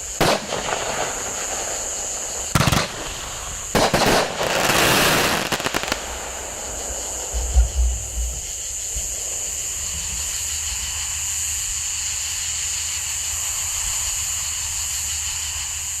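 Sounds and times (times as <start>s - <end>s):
firework bursts: 0.0s - 11.4s
steady high hiss: 0.0s - 16.0s
faint low rumble: 6.0s - 10.4s.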